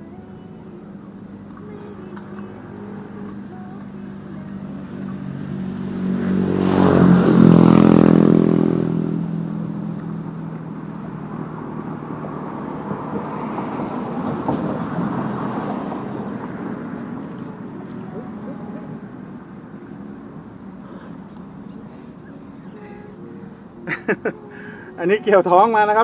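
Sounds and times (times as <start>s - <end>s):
vehicle engine passing by: 0.0s - 26.0s.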